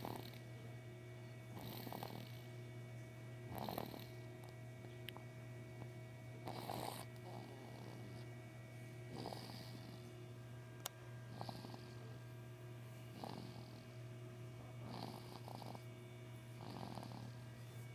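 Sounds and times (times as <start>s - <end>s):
snoring breaths: 0.0s - 0.4s, 1.6s - 2.5s, 3.5s - 4.2s, 6.4s - 8.3s, 9.1s - 10.1s, 11.3s - 12.0s, 13.1s - 13.8s, 14.8s - 15.9s, 16.6s - 17.4s
steady low hum: 0.0s - 17.9s.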